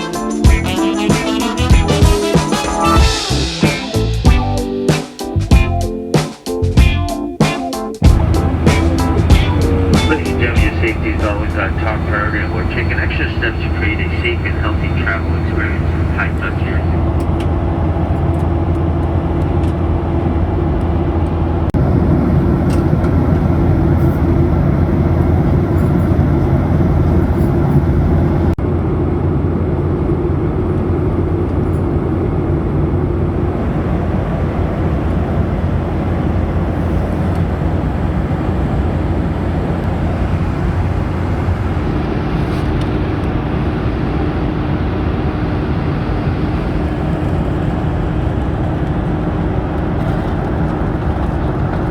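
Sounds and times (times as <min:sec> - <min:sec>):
jet engine drone: 0:00.0 - 0:06.6, 0:07.4 - 0:51.9
rushing air: 0:08.0 - 0:16.3.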